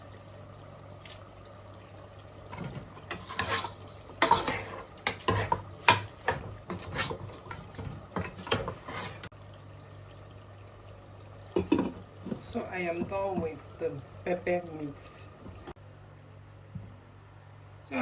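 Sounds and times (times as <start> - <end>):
spoon scraping a pot: 2.5 - 9.3.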